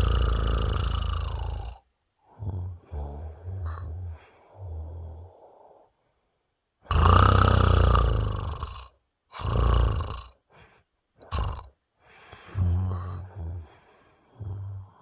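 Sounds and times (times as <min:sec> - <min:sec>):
man snorting: 0:00.0 - 0:01.8, 0:06.9 - 0:10.4, 0:11.2 - 0:15.0
man snoring: 0:00.0 - 0:05.8, 0:06.9 - 0:10.4, 0:11.2 - 0:11.7, 0:12.4 - 0:15.0.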